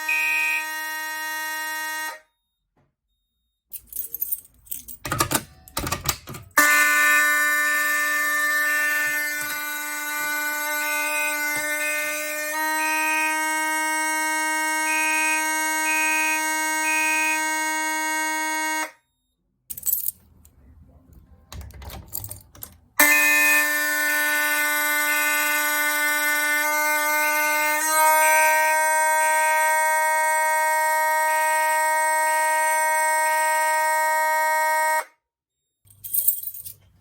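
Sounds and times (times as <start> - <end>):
continuous fire alarm horn: 0.0 - 4.2, 4.8 - 19.6, 23.0 - 35.4
alarm beeping in groups: 6.6 - 19.7.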